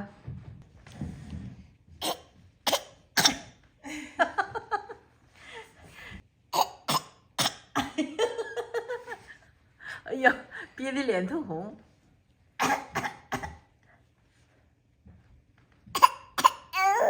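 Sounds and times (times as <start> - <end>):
toddler coughing: 2.0 - 3.5, 6.6 - 8.0, 12.6 - 13.7, 16.0 - 17.0
toddler voice sounds: 16.8 - 17.0.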